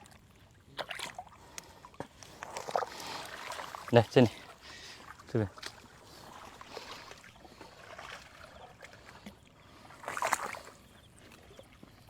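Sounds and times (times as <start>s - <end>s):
muddy water sloshing: 0.0s - 12.0s.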